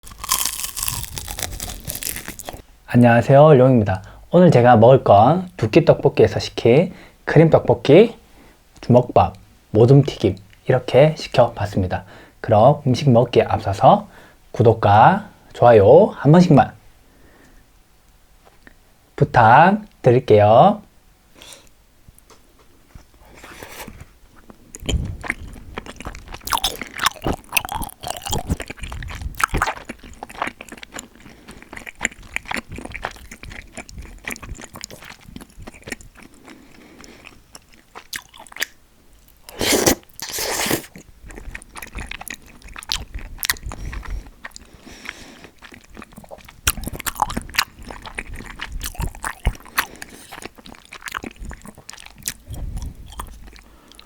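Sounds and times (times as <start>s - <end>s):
person crunching and chewing food: 0.0s - 2.6s, 23.0s - 54.0s.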